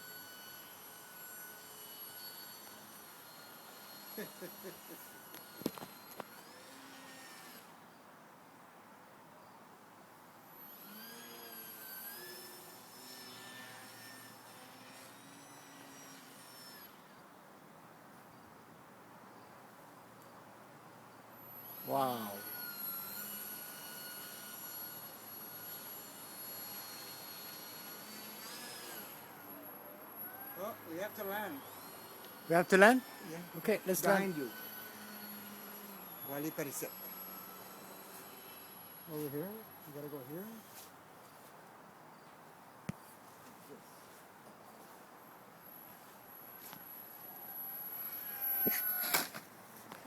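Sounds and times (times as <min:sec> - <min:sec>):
model airplane motor whining: 0:10.6 - 0:17.0, 0:21.4 - 0:39.6.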